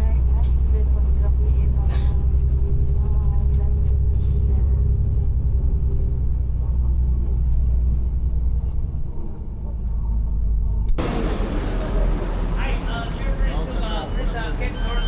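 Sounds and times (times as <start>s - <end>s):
road vehicle rumble: 11.0s - 15.0s.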